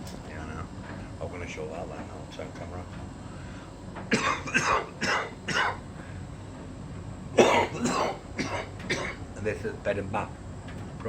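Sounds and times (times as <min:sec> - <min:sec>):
tumble dryer humming: 0:00.0 - 0:11.0
person coughing: 0:04.1 - 0:05.8, 0:07.4 - 0:09.2.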